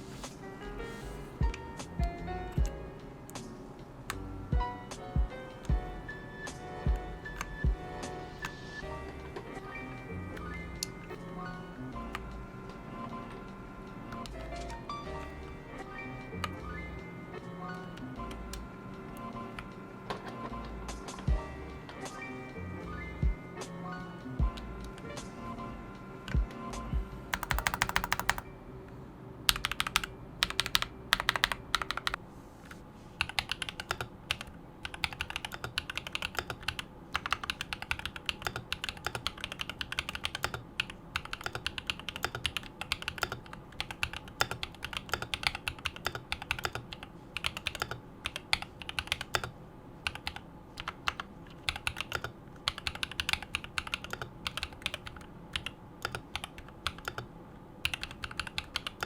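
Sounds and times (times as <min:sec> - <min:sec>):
mechanical keyboard typing: 0:27.3 - 0:28.5, 0:29.5 - 0:32.2, 0:33.2 - 0:59.0.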